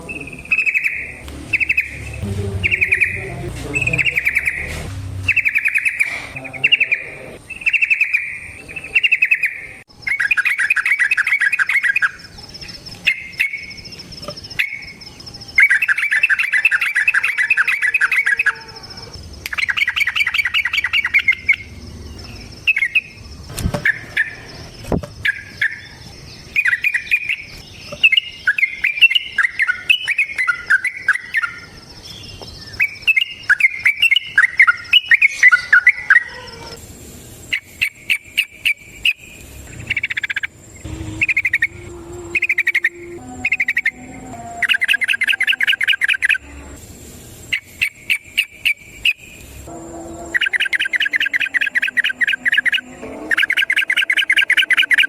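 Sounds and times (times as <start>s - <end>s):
bulbul singing: 0.0s - 36.8s, 37.4s - 46.8s, 47.4s - 55.0s
faint high whine: 0.0s - 55.0s.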